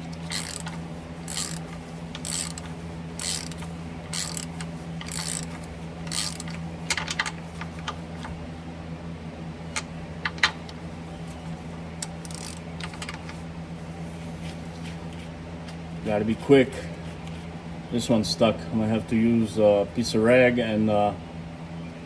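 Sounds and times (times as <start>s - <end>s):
ratchet wrench rasping: 0.0s - 8.0s, 12.0s - 13.4s
steady low hum: 0.0s - 22.0s.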